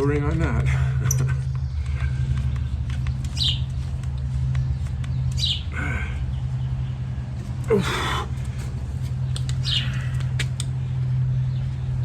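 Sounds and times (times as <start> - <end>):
bird chirping: 1.0 - 10.2.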